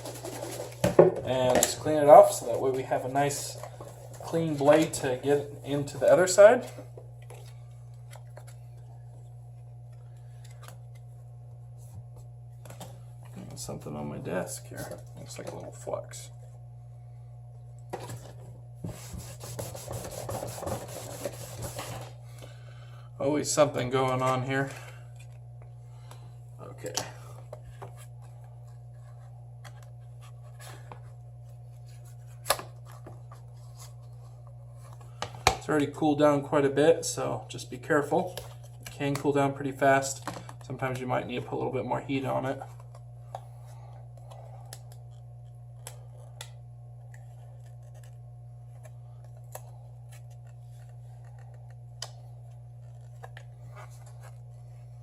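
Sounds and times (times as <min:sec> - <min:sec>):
steady low hum: 0:00.0 - 0:55.0.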